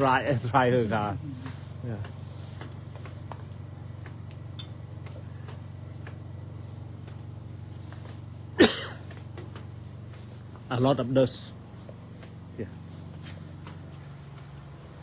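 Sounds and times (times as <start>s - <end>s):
steady low hum: 0.0s - 15.0s
person sneezing: 8.6s - 9.1s.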